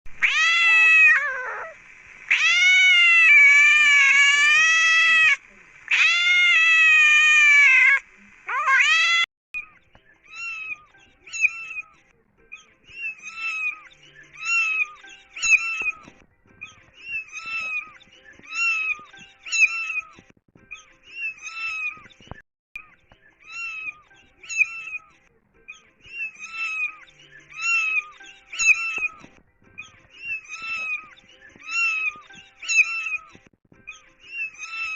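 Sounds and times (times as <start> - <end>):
cat meowing: 0.2 - 9.3, 12.6 - 20.2, 21.1 - 22.1, 25.8 - 29.2, 29.8 - 33.4, 34.3 - 34.9.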